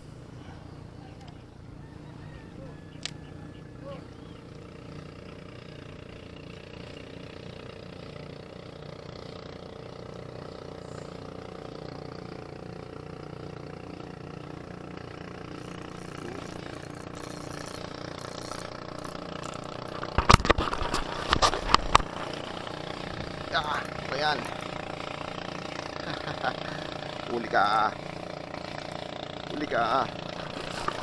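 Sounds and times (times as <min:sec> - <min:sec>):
engine droning: 0:00.0 - 0:31.0.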